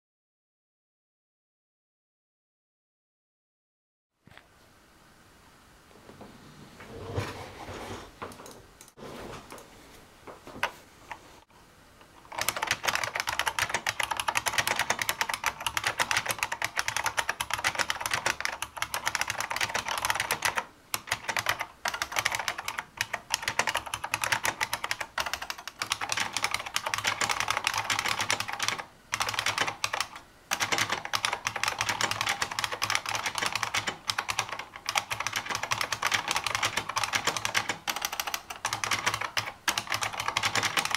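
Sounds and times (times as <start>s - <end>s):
fast typing on clicky keyboard: 12.2s - 40.9s.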